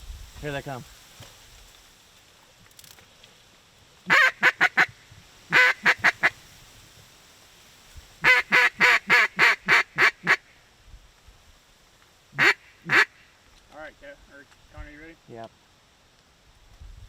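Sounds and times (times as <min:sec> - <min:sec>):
duck call quacks: 0:04.1 - 0:04.9, 0:05.5 - 0:06.3, 0:08.2 - 0:10.5, 0:12.4 - 0:13.3.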